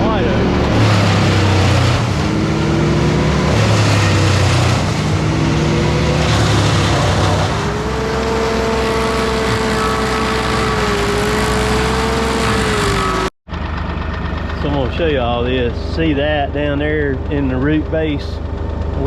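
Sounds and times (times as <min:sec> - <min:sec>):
machine engine running: 0:00.0 - 0:19.0.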